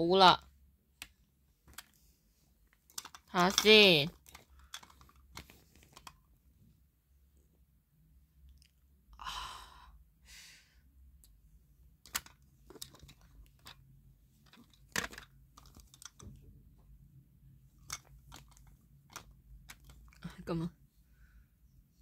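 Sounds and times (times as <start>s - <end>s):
plastic toy pieces rustling: 2.8s - 6.2s, 12.0s - 16.3s, 17.8s - 20.4s
plastic toy pieces clicking: 2.9s - 6.2s, 12.0s - 13.8s, 14.5s - 16.3s, 17.8s - 20.4s.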